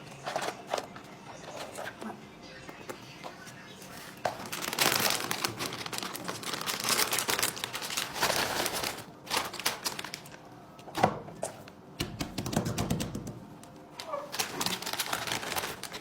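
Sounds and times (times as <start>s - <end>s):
crinkling and rustling: 0.0s - 2.2s, 2.8s - 10.4s, 14.0s - 16.0s.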